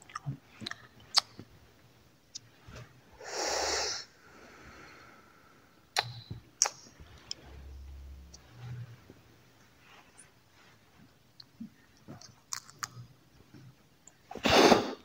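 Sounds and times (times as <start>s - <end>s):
breathy rush of exhaled air: 3.2s - 5.7s.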